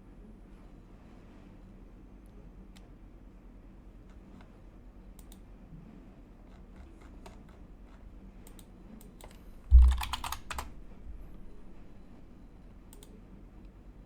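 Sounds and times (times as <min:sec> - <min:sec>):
keyboard typing: 0:08.4 - 0:12.3
low thump: 0:09.6 - 0:12.2.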